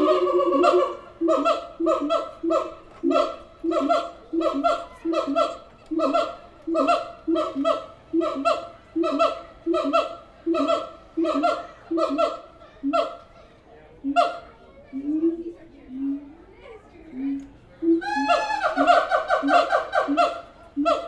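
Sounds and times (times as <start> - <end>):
siamangs barking calls: 0.0 - 13.3, 14.0 - 14.5, 17.9 - 21.0.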